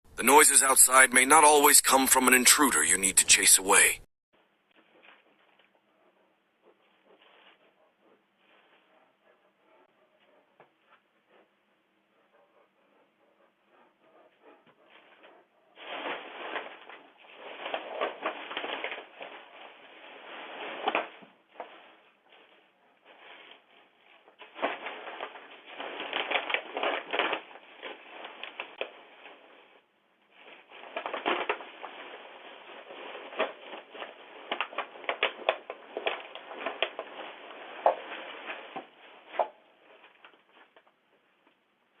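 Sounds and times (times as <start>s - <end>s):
bear crunching and crackling: 14.4s - 41.7s.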